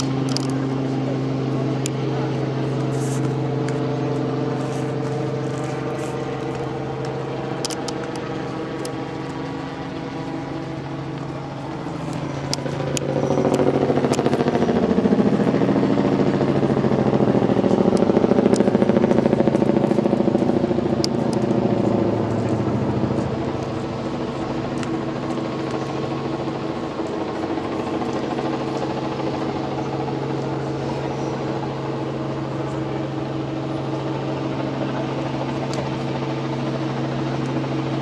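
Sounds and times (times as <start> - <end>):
vehicle engine running: 0.0 - 38.0.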